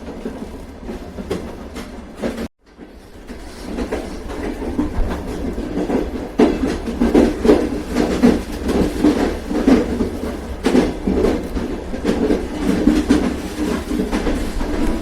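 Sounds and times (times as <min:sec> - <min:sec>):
railway carriage rumble: 0:00.0 - 0:15.0
wheels clickety-clack: 0:00.0 - 0:15.0.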